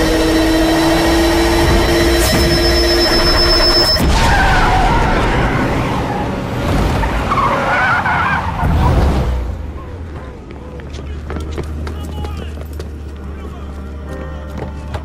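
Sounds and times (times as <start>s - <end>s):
car tyres squealing: 0.0s - 10.3s
car engine rumble: 0.0s - 11.9s
road noise: 0.0s - 15.0s.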